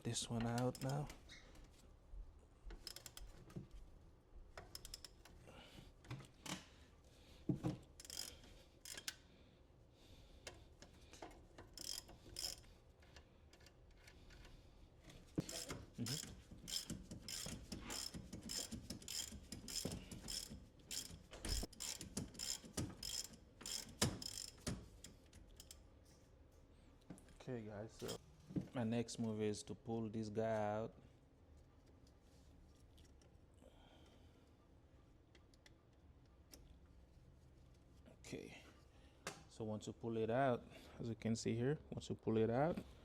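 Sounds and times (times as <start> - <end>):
ratchet wrench clicking: 0.4 - 1.1, 2.7 - 3.3, 4.6 - 5.3, 7.9 - 9.2, 11.2 - 14.4, 15.4 - 25.8.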